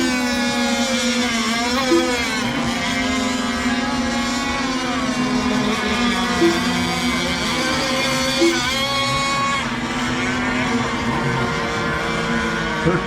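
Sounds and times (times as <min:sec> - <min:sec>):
model boat engines revving: 0:00.0 - 0:13.0.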